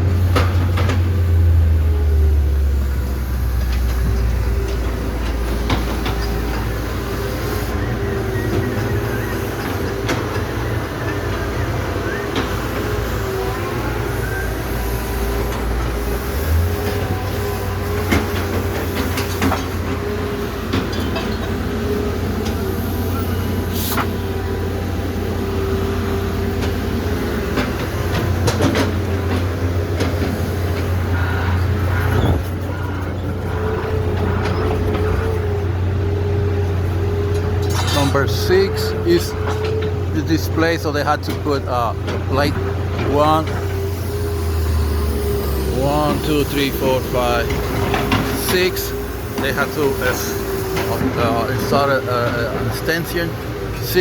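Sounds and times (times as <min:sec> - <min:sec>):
scattered clicks and knocks: 0:18.0 - 0:20.1, 0:27.5 - 0:30.9, 0:47.4 - 0:53.2.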